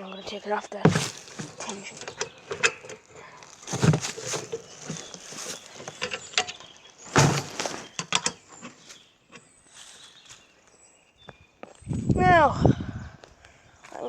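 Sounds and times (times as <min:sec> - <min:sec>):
equipment knocks and clicks: 0:00.9 - 0:08.4
loud thump: 0:07.2 - 0:07.9.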